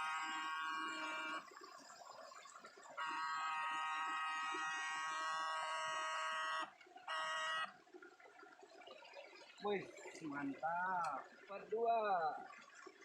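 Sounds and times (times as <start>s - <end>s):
high electronic buzzing whine: 0.0s - 1.5s, 3.0s - 7.7s.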